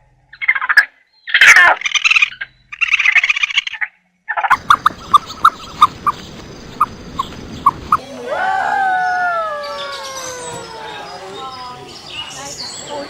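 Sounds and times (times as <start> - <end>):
animal long descending call: 8.0 - 11.7.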